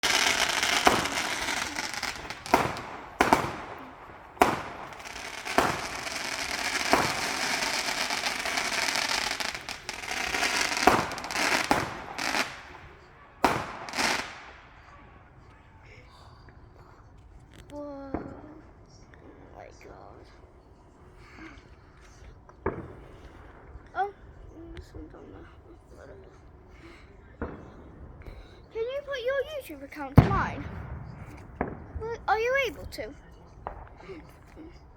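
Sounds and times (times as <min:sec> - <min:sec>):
fireworks bangs: 0:00.0 - 0:16.0, 0:22.6 - 0:23.9, 0:24.8 - 0:34.9
fireworks crackling and hissing: 0:00.0 - 0:34.9.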